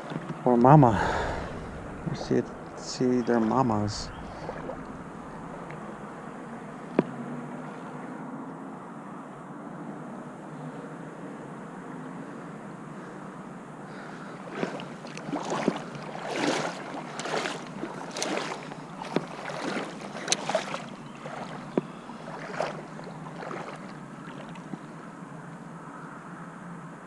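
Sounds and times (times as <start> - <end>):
water splashes: 0.0 - 6.4, 14.0 - 25.1
river rushing: 0.6 - 6.4, 14.4 - 24.7
wind noise: 0.6 - 6.5.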